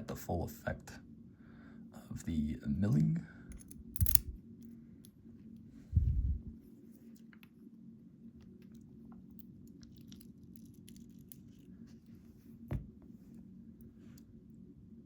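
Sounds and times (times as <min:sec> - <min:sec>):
faint low hum: 0:00.0 - 0:15.0
metal lock parts clicking: 0:03.5 - 0:04.4
dull knock: 0:12.7 - 0:12.9.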